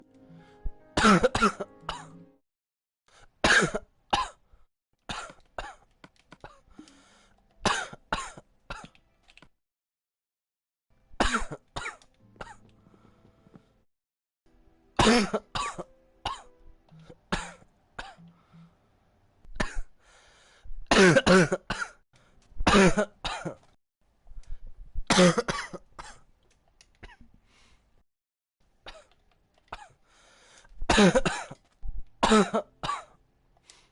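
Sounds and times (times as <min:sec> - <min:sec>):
person coughing: 0:01.0 - 0:02.2, 0:03.4 - 0:04.4, 0:07.6 - 0:09.0, 0:11.2 - 0:12.6, 0:15.0 - 0:16.5, 0:17.3 - 0:18.2, 0:19.6 - 0:19.9, 0:20.9 - 0:22.0, 0:22.7 - 0:23.6, 0:25.1 - 0:26.2, 0:30.9 - 0:31.6, 0:32.2 - 0:33.2.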